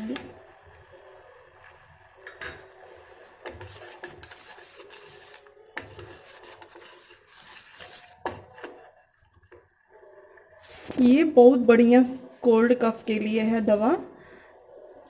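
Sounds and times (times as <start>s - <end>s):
spoon scraping pot bottom: 3.4s - 9.0s.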